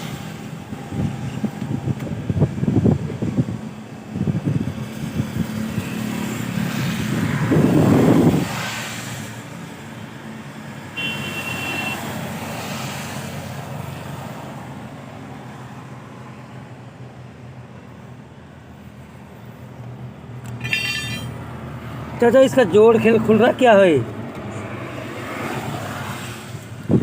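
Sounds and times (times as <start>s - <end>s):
road vehicles passing: 0.0s - 27.0s
brief high tone: 20.6s - 21.4s.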